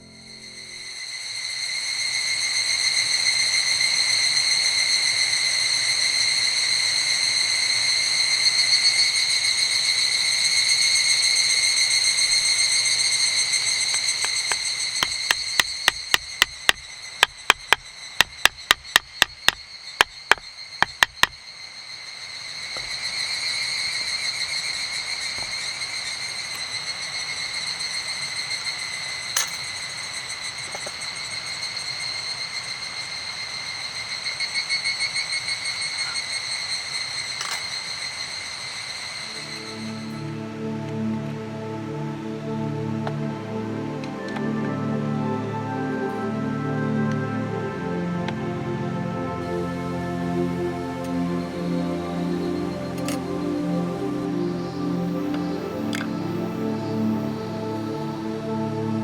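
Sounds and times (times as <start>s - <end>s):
high insect drone: 0.0s - 59.0s
sharp wooden knocks: 13.9s - 21.4s.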